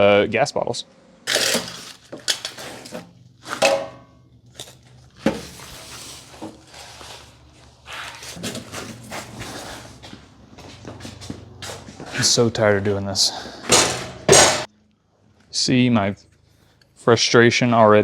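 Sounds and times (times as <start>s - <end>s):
metal clank ringing: 13.7s - 14.7s.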